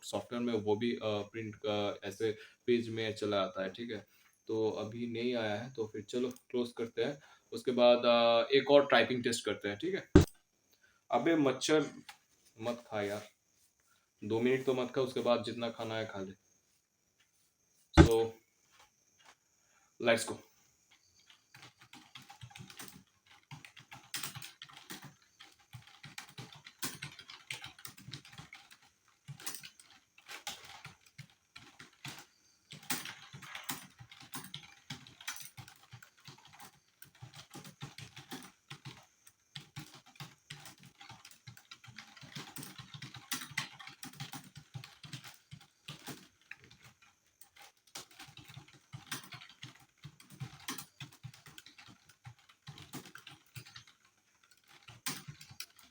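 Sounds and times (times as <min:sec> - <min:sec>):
computer keyboard typing: 0:21.0 - 0:55.9.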